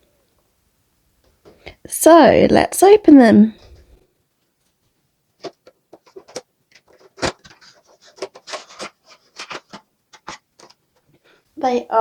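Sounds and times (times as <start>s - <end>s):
packaging clicks and rustles: 5.4s - 11.2s.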